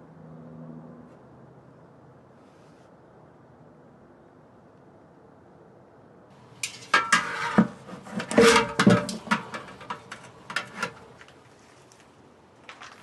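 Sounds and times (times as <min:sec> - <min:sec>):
metal parts clanking and scraping: 0:06.4 - 0:11.4.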